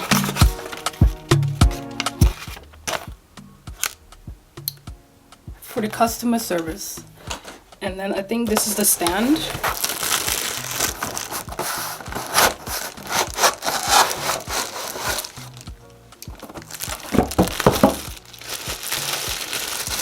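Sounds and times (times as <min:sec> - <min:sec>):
packaging rustling: 0:00.0 - 0:03.1, 0:03.8 - 0:04.0, 0:08.6 - 0:15.7, 0:16.3 - 0:20.0
quiet background music: 0:00.0 - 0:20.0.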